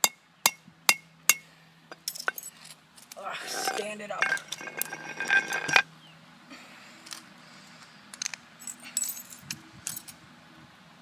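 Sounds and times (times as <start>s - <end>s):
phone pieces clicking and clinking: 1.9s - 2.5s, 3.5s - 5.8s.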